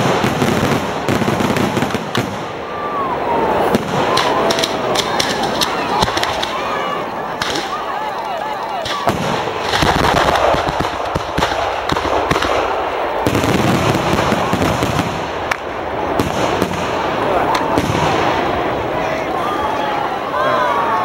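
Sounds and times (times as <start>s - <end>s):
firework bangs: 0.0s - 19.0s
firework crackling: 0.0s - 20.4s.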